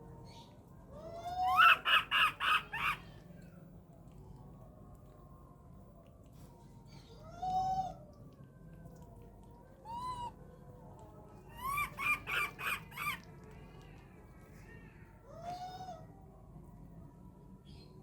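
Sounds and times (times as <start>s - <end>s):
baby monkey calling: 1.2s - 3.0s, 11.5s - 13.3s.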